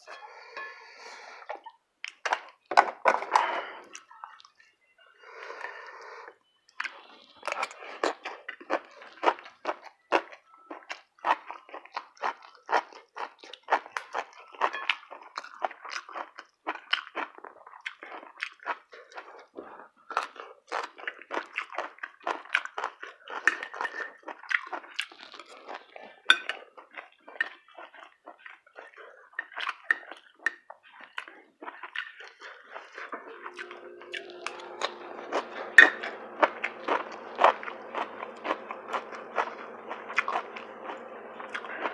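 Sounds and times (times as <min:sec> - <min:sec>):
person chewing and crunching food: 0:00.0 - 0:41.9
faint steady hum: 0:32.5 - 0:41.9.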